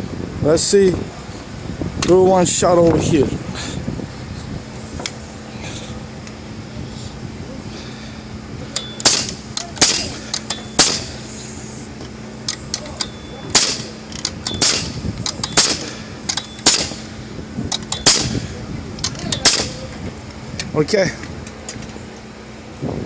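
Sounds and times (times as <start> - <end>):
nail gun firing: 9.0 - 11.2, 13.5 - 13.9, 14.5 - 17.0, 17.9 - 18.4, 19.3 - 19.8.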